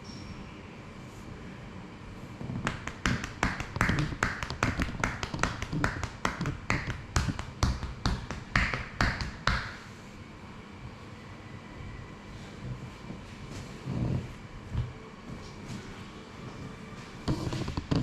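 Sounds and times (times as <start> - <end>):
hands slapping on body: 2.6 - 9.8.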